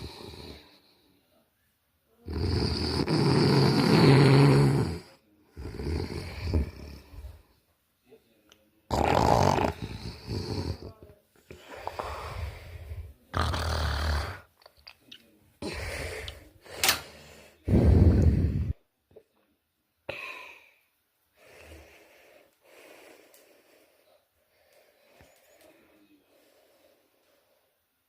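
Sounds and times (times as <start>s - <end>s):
person snoring loudly: 2.2s - 7.0s, 8.9s - 10.9s, 13.3s - 14.5s.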